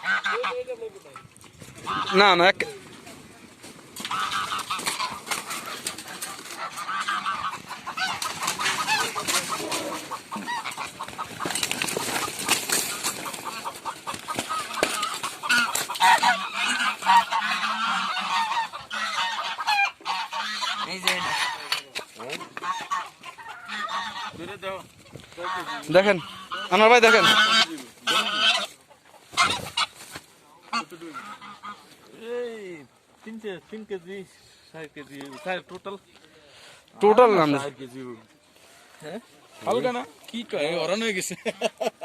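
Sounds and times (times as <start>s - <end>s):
geese honking: 0.0s - 2.7s, 3.6s - 24.6s, 25.4s - 32.2s.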